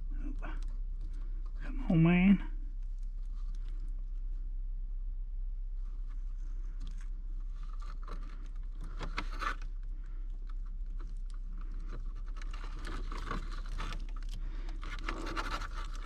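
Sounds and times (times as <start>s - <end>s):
low hum: 0.0s - 16.0s
hands handling wires: 6.0s - 16.0s.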